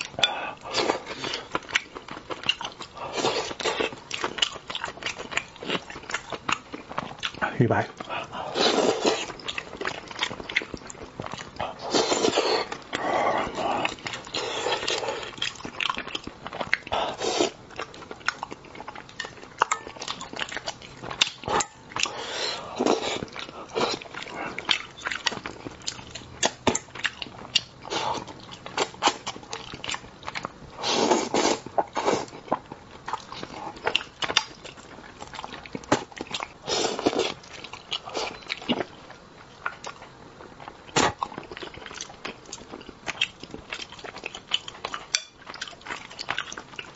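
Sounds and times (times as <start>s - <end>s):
chewing and biting: 0.0s - 46.9s
wet mouth sounds: 40.9s - 42.0s.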